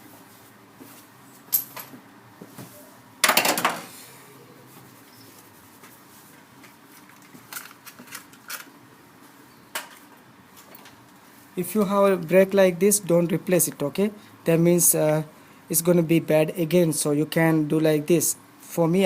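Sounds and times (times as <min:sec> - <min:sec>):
clinks of tools and parts: 0:01.5 - 0:02.0.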